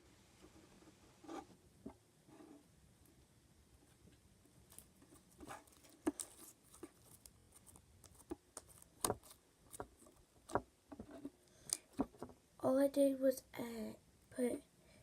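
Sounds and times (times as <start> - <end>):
slime squishing: 4.7 - 10.6
small clicks and pops: 11.5 - 12.3.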